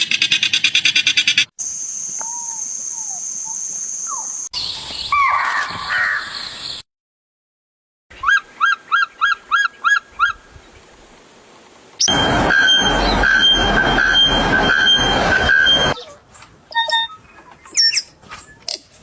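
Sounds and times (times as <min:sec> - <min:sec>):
high-pitched buzz: 0:12.1 - 0:16.0.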